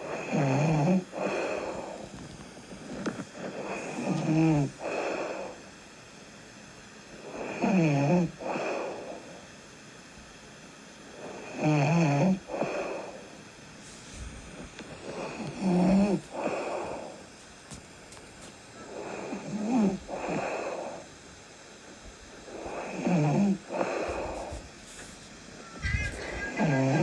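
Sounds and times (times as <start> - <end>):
person snoring: 0.2 - 2.0, 15.1 - 17.2, 25.5 - 27.0
soft breathy breath: 1.0 - 5.7, 12.4 - 21.1, 22.4 - 27.0.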